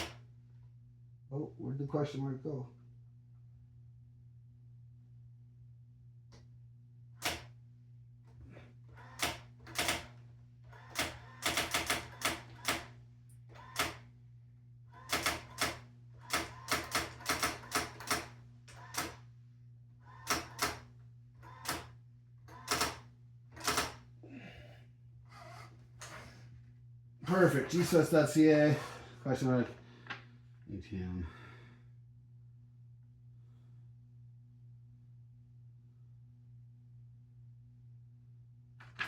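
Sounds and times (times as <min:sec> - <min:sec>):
steady low hum: 0:00.0 - 0:11.5, 0:17.2 - 0:38.8
electronic typewriter striking keys: 0:09.2 - 0:10.1, 0:10.9 - 0:12.9, 0:13.6 - 0:14.0, 0:15.0 - 0:19.2, 0:20.2 - 0:20.8, 0:22.5 - 0:23.0, 0:23.6 - 0:24.0.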